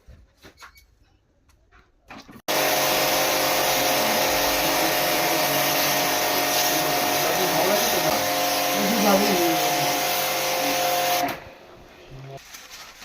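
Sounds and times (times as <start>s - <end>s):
pressure washer pump running: 2.5s - 11.6s.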